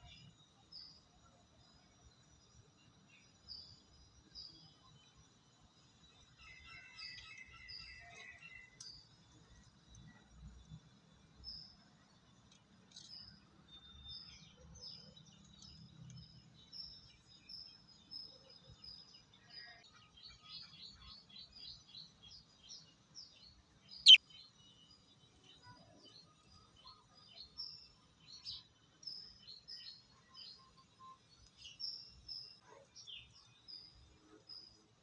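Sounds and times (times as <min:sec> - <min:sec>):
lovebirds chirping: 0:24.0 - 0:24.2.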